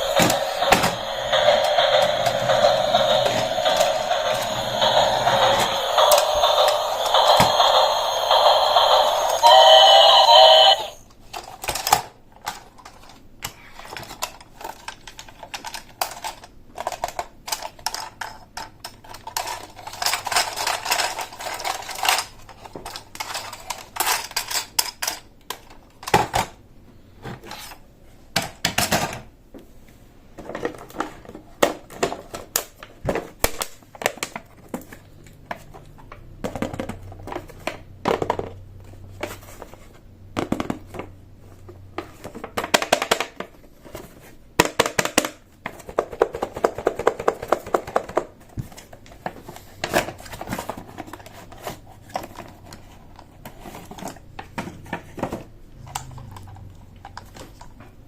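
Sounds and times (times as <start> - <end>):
pitched electronic sound: 0.0 - 11.0
plastic toy pieces clicking: 14.1 - 26.2.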